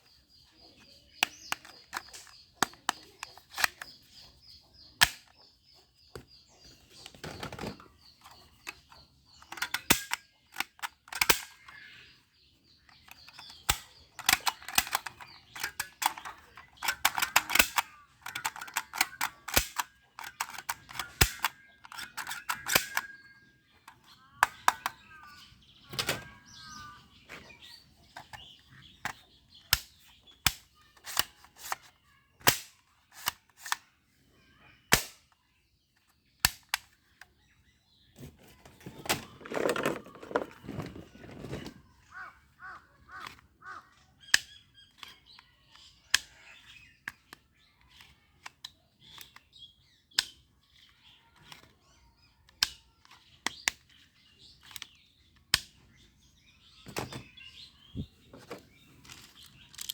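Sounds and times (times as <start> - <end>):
toy gun firing sharp cracks: 5.0 - 5.3, 9.6 - 11.9, 13.4 - 23.2, 32.4 - 33.8, 34.9 - 35.4, 36.4 - 36.8
faint bird calls: 37.0 - 55.1.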